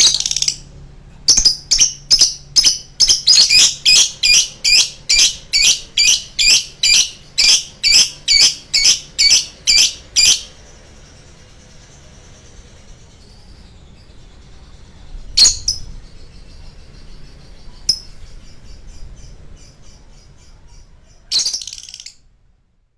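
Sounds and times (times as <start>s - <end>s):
bird twittering: 0.0s - 0.7s, 1.3s - 22.3s
bird shrill repeated calls: 1.4s - 10.6s.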